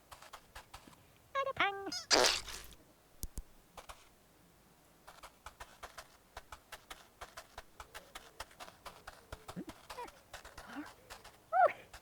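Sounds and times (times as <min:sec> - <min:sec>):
light clicking footsteps trotting: 0:00.0 - 0:01.0, 0:05.0 - 0:12.0.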